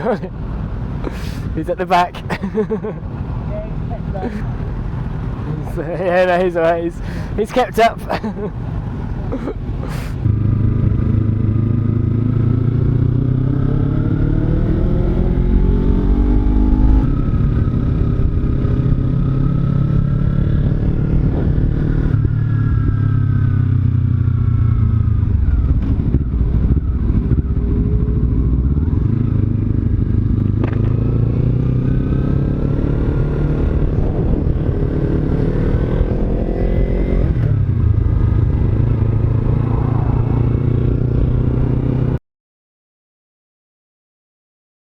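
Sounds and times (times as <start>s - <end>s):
motorcycle engine accelerating: 10.1s - 42.2s.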